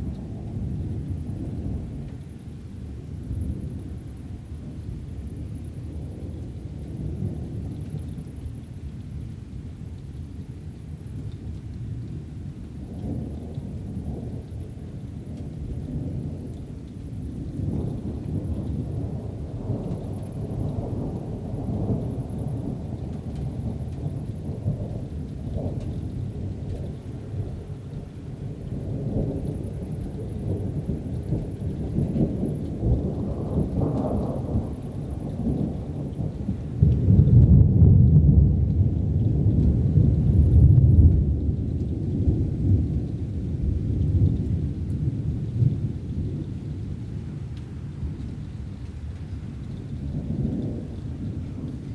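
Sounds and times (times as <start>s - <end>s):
distant thunder rumbling: 17.1s - 51.9s.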